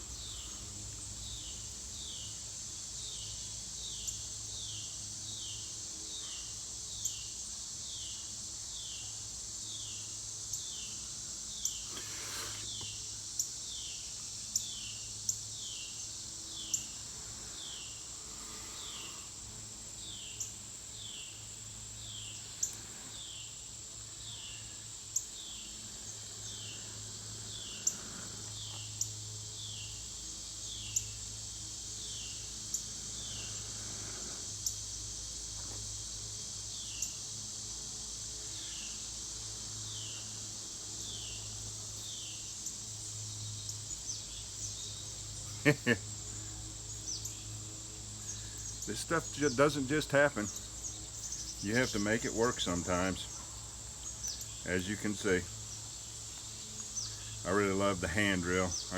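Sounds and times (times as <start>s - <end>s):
falling insect chirp: 0.0s - 58.9s
insect high buzz: 0.0s - 58.9s
sharp insect clicks: 11.5s - 17.0s, 18.9s - 37.6s, 38.5s - 57.4s.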